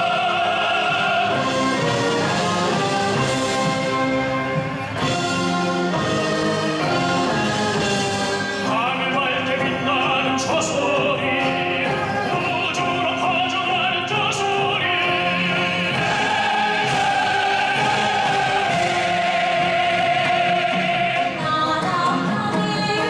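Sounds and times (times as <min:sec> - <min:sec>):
person singing operatically: 0:00.0 - 0:03.5, 0:08.6 - 0:23.0
military band playing chords: 0:00.0 - 0:13.8, 0:14.5 - 0:21.4.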